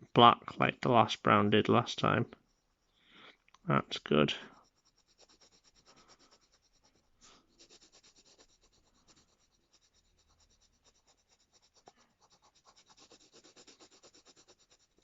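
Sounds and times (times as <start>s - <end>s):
pencil scratching on paper: 2.0s - 2.9s, 4.5s - 15.0s.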